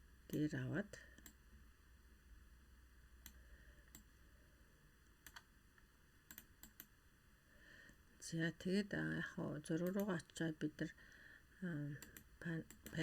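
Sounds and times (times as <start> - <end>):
computer mouse clicks: 1.1 - 1.4, 3.2 - 4.1, 5.2 - 5.5, 6.3 - 6.9, 9.8 - 10.2, 12.0 - 13.0.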